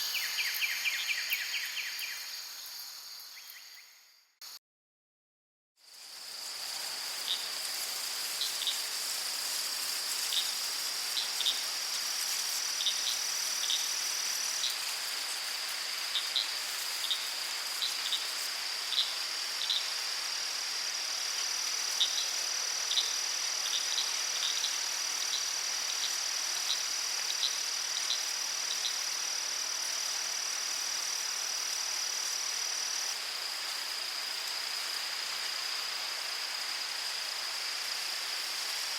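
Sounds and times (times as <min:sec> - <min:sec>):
higher insect trill: 0:00.0 - 0:04.3
crickets trilling: 0:00.0 - 0:04.4, 0:05.8 - 0:38.9.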